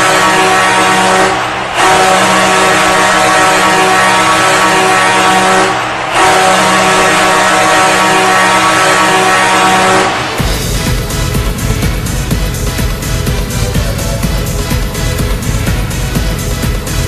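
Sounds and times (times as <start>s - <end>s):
arena goal horn blasts: 0.0s - 11.4s.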